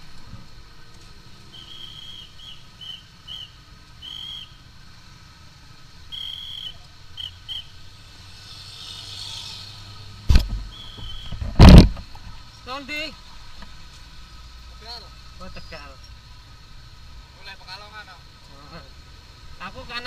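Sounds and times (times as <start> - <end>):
whistle blasts: 1.5 - 4.6, 6.1 - 7.8, 10.7 - 11.5.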